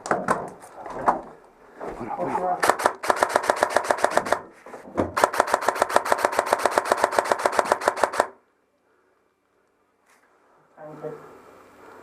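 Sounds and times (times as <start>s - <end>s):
airsoft gun firing full auto: 2.6s - 4.5s, 5.2s - 8.4s.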